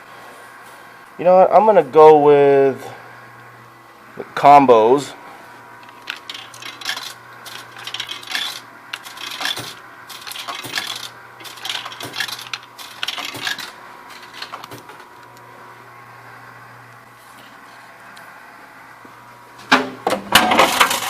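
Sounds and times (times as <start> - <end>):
coins clinking in vending machine: 5.9 - 15.0, 20.4 - 21.0.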